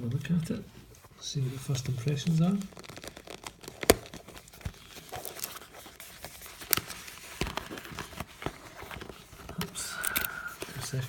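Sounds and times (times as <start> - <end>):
wrapping rustling and crinkling: 0.8 - 11.0
packaging clicks: 2.2 - 11.0.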